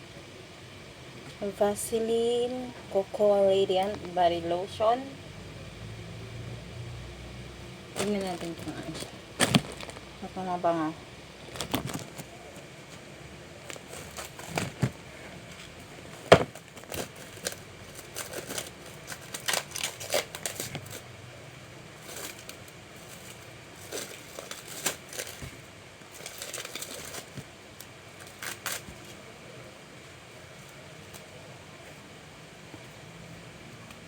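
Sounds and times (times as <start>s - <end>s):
plastic packaging crinkling and tearing: 8.0s - 10.4s, 11.4s - 21.2s, 21.9s - 29.3s.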